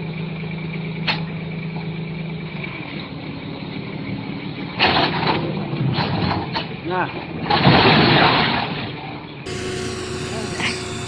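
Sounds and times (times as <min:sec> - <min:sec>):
loud noisy burst: 0:09.5 - 0:11.0
thin high whine: 0:09.5 - 0:11.0
vehicle engine running: 0:09.5 - 0:11.0.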